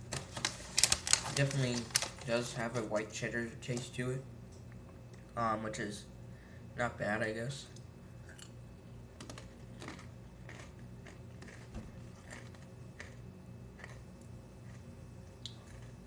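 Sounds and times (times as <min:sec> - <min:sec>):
crackers being chewed: 0:08.3 - 0:16.0.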